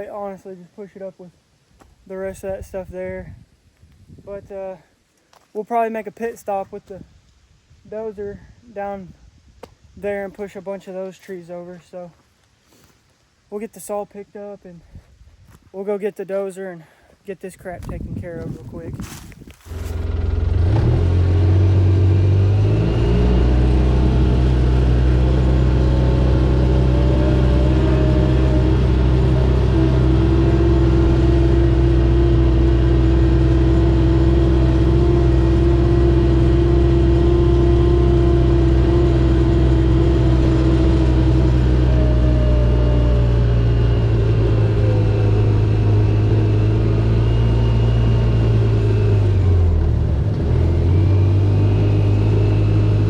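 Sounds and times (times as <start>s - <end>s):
vehicle engine running: 19.6s - 53.0s.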